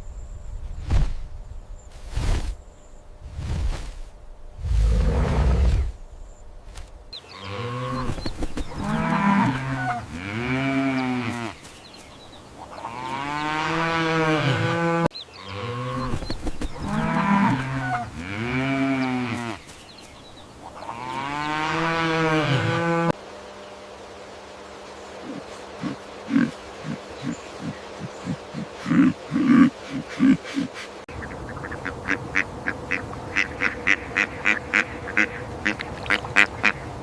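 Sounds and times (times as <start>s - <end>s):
cow mooing: 8.8s - 11.6s, 12.8s - 16.1s, 16.8s - 19.6s, 20.9s - 23.1s.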